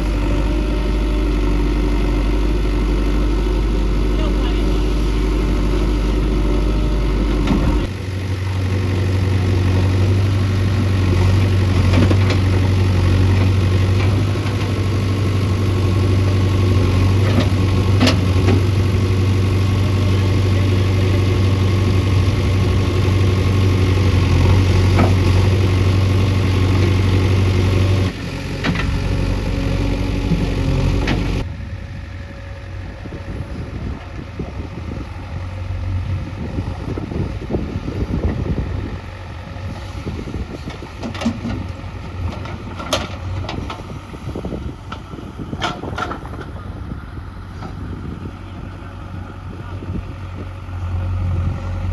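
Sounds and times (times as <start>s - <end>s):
heavy diesel engine revving: 0.0s - 31.5s.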